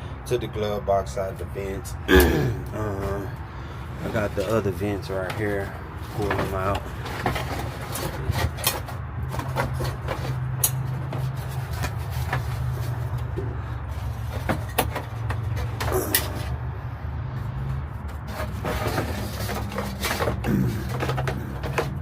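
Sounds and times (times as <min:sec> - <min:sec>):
plastic creaking: 0:18.2 - 0:22.0.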